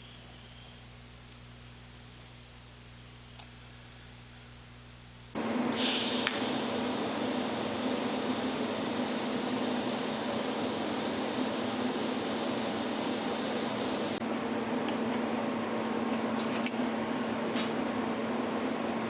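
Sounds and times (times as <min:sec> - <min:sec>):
machine hum: 0:00.0 - 0:16.1.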